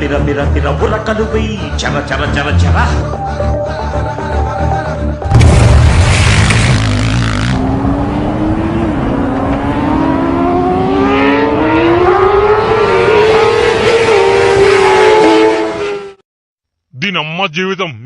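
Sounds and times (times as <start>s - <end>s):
engine revving up: 5.9s - 16.2s.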